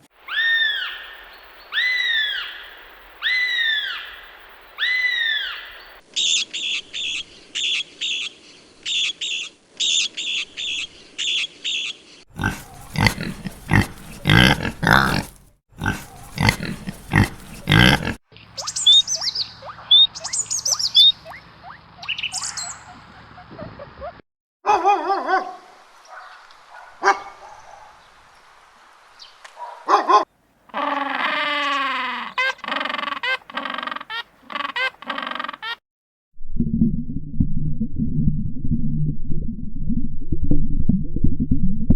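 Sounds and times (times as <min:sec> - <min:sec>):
rough rapid pulsing call: 0:12.4 - 0:24.2
quick repeated chirps: 0:18.4 - 0:24.1.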